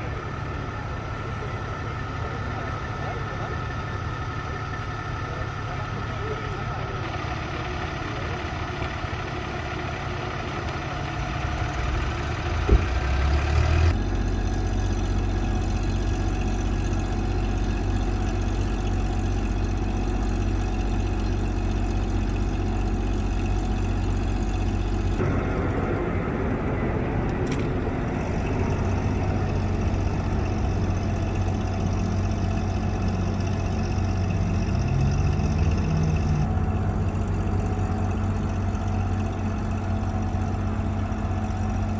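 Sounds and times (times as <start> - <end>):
engine idling: 0.0 - 41.9.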